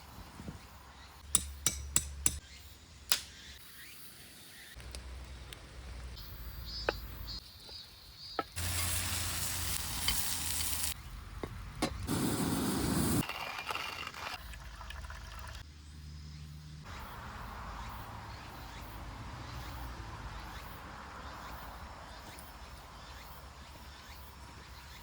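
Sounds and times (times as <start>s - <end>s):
hissing and sizzling: 8.6s - 11.0s, 12.0s - 14.2s.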